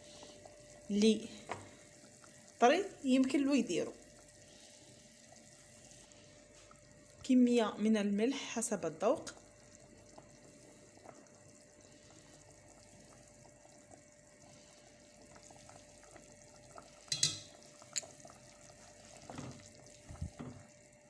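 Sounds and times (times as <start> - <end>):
faint steady hum: 0.0 - 21.0
sharp clink: 17.1 - 17.5.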